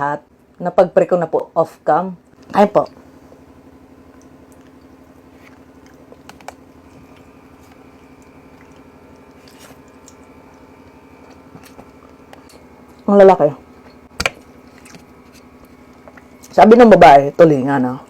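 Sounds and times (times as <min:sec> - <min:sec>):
steady low hum: 0:00.0 - 0:18.0
person chewing: 0:04.0 - 0:16.6.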